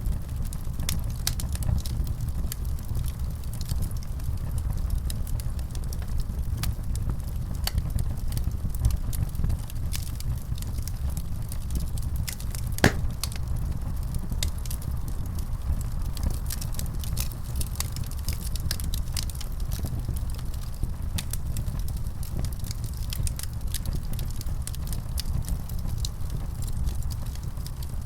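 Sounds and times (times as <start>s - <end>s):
wood fire crackling: 9.6s - 28.0s.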